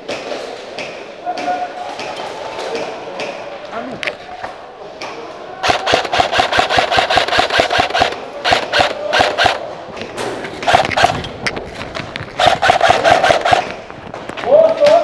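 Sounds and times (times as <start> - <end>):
airsoft rifle firing bursts: 5.6 - 9.6, 10.6 - 11.3, 12.4 - 13.8.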